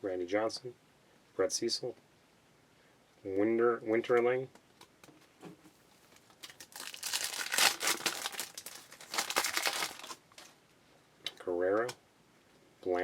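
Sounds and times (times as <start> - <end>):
foil wrapper crinkling and tearing: 6.2 - 10.6.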